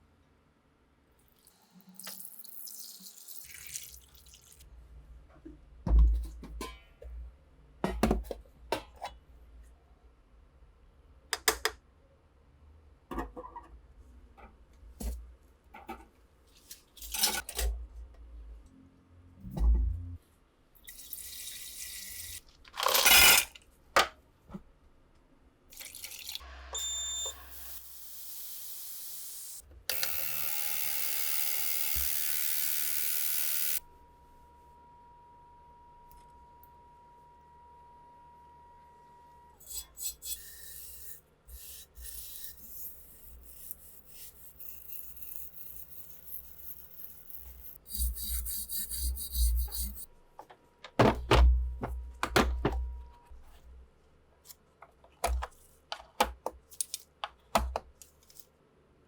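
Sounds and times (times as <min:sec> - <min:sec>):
knocks and clicks: 0:50.4 - 0:53.2.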